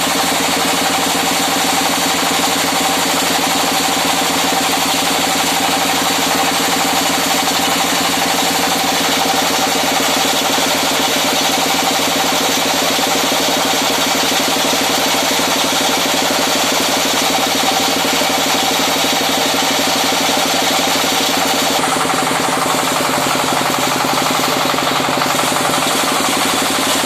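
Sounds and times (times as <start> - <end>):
generator engine running: 0.0 - 27.0.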